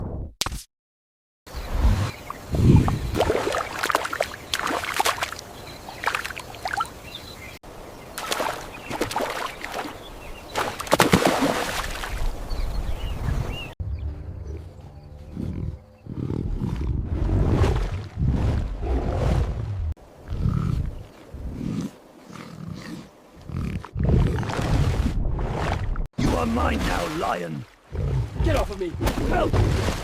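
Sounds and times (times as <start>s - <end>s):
lion roaring and growling: 14.3s - 24.6s.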